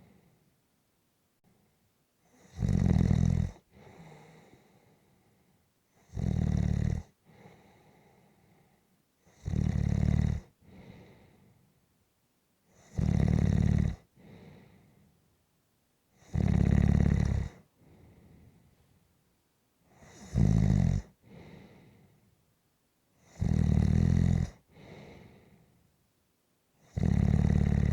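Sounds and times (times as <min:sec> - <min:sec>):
person snoring: 0:02.4 - 0:03.6, 0:09.4 - 0:10.5, 0:16.3 - 0:17.6, 0:23.4 - 0:24.9, 0:26.9 - 0:27.9.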